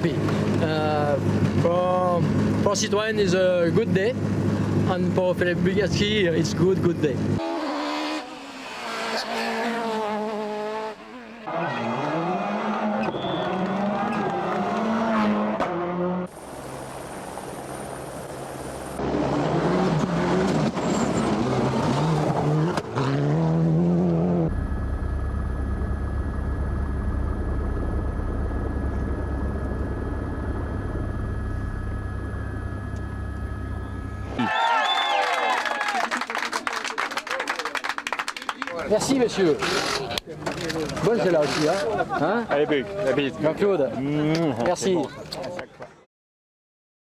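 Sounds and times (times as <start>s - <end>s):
rally car engines revving: 0.0s - 17.2s, 18.6s - 24.6s
steady low rumble: 24.5s - 34.3s
faint steady whine: 24.5s - 34.4s.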